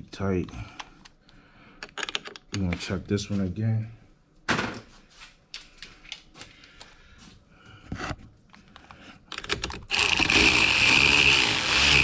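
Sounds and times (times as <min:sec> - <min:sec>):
wrench clicks and scrapes: 0:09.3 - 0:12.0.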